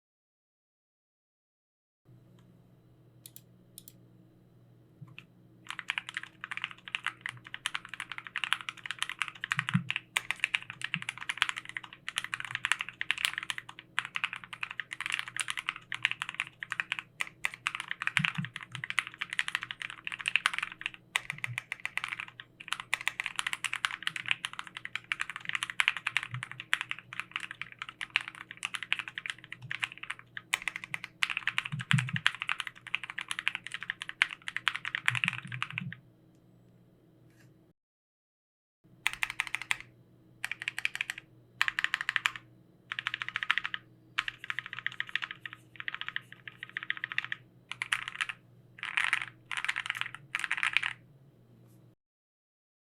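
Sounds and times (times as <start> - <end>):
fast mechanical keyboard typing: 5.7 - 36.0, 39.0 - 51.0.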